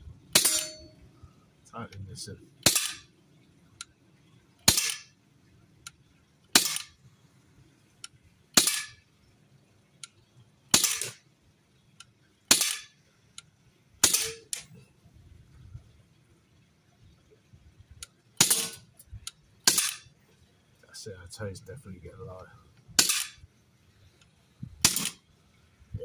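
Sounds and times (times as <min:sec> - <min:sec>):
air rifle shots popping: 0:04.7 - 0:05.1, 0:06.6 - 0:06.9, 0:12.5 - 0:12.9, 0:14.0 - 0:14.5, 0:23.0 - 0:23.4, 0:24.8 - 0:25.2
faint clicks: 0:08.0 - 0:08.2.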